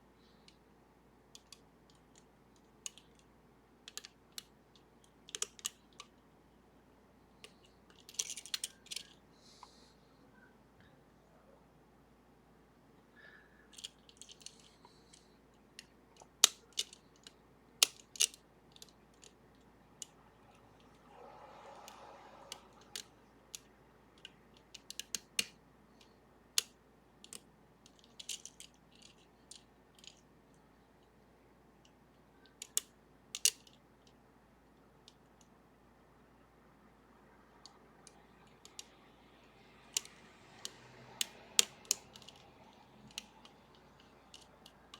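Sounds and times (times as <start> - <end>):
soft hiss: 18.7 - 44.9.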